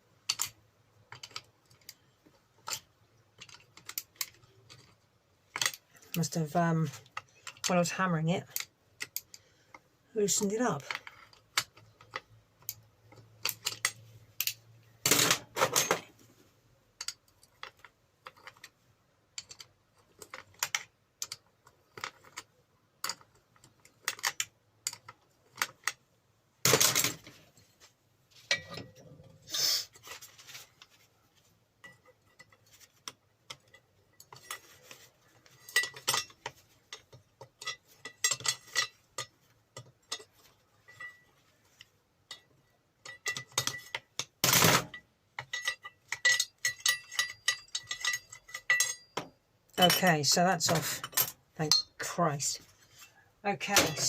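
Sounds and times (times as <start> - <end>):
metal tools clinking and clanking: 13.1 - 16.2, 28.4 - 29.2, 31.8 - 54.0.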